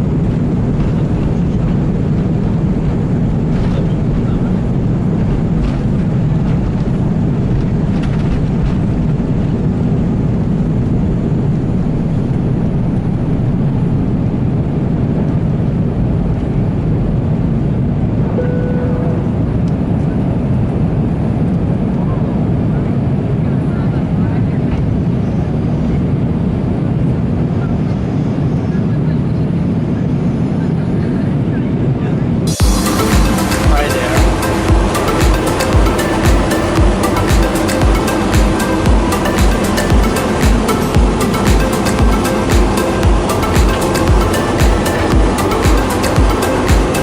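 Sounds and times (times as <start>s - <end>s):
airplane cabin noise: 0.0s - 47.0s
short beep: 18.3s - 19.4s.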